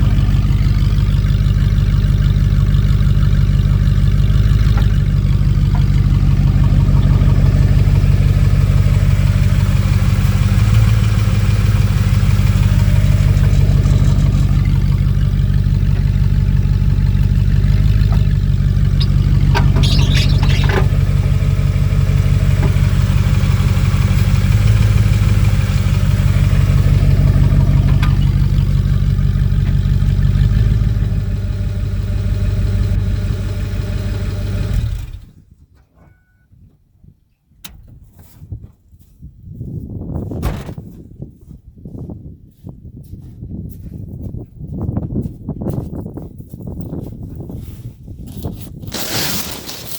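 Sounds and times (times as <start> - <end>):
truck engine humming: 0.0 - 35.2
high-pitched squeal: 3.7 - 29.0.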